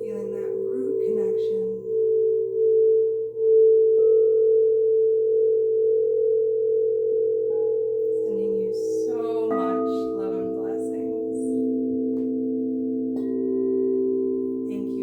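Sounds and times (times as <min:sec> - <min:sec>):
singing bowl ringing: 0:00.0 - 0:15.0
bells or chimes: 0:07.5 - 0:15.0.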